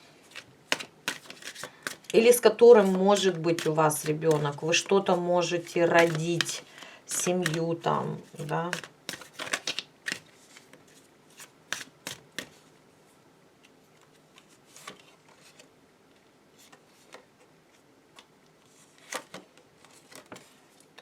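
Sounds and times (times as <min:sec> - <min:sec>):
cards snapping and tapping: 0:00.7 - 0:02.1, 0:07.2 - 0:07.6, 0:08.7 - 0:10.2, 0:11.7 - 0:12.5.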